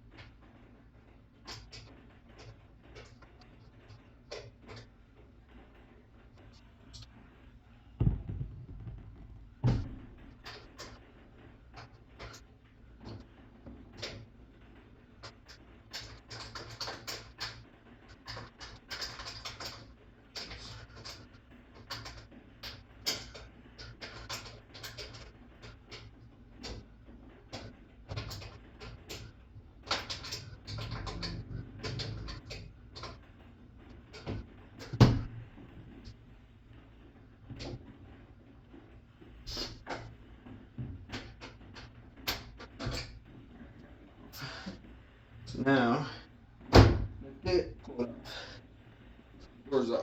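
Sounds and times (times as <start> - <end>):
tools clicking and scraping metal: 11.7 - 13.2, 15.2 - 36.2.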